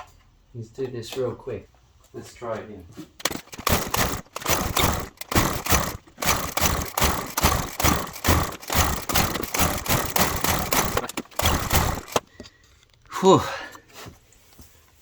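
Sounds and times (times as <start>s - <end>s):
lawnmower pull-start rasping: 3.2s - 12.4s.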